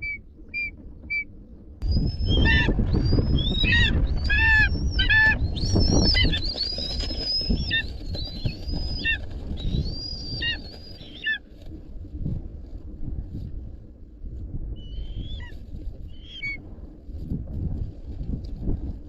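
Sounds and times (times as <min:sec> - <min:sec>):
low rumble: 0:00.0 - 0:06.9
eagle calling: 0:00.0 - 0:11.4, 0:14.8 - 0:16.6.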